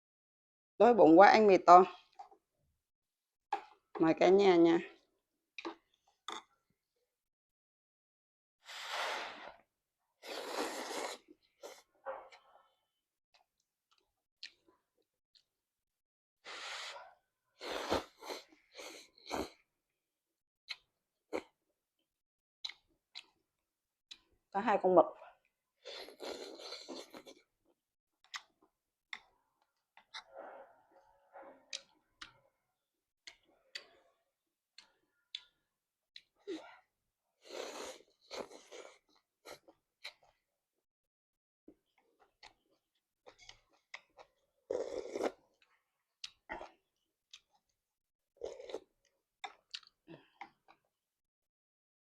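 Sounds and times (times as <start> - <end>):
slurping noodles: 8.6 - 11.9, 16.5 - 19.6, 25.8 - 27.4, 37.4 - 39.6
noodle slurping: 10.2 - 11.8
chewing: 25.8 - 27.5, 48.4 - 50.8.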